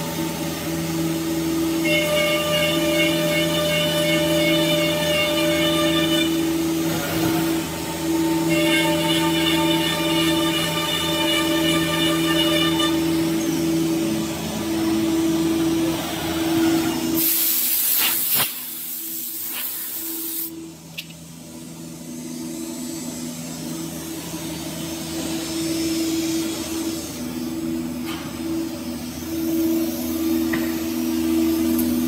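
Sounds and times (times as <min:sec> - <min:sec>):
loud hiss: 0:17.2 - 0:20.5.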